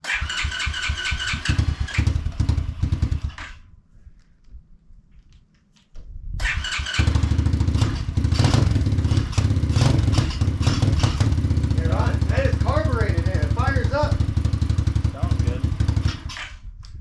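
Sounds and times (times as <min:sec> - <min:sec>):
dirt bike engine running: 0:00.5 - 0:03.6, 0:06.9 - 0:16.6.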